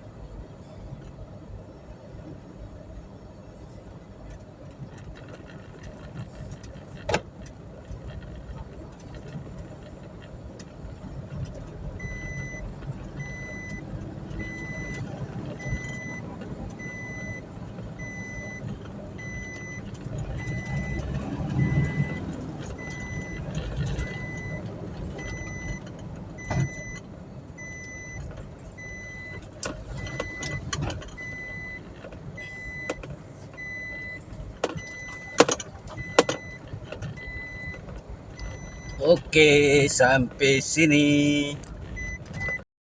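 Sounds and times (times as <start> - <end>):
road and engine rumble: 0.0 - 42.7
electronic warning beep: 12.0 - 17.4, 18.0 - 18.6, 19.2 - 23.4, 24.0 - 24.6, 25.2 - 25.8, 26.4 - 27.0, 27.6 - 28.2, 28.8 - 29.4, 30.0 - 30.6, 33.6 - 34.2, 37.2 - 37.8, 42.0 - 42.6.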